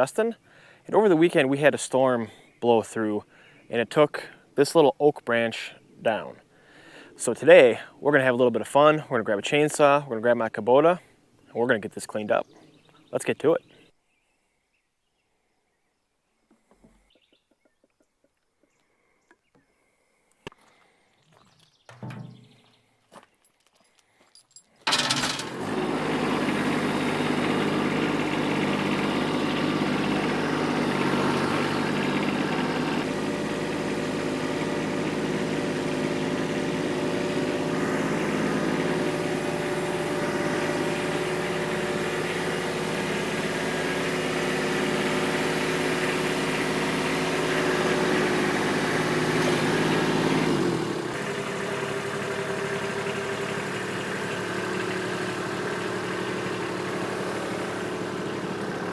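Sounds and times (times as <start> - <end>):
tractor diesel engine running: 24.8 - 58.9.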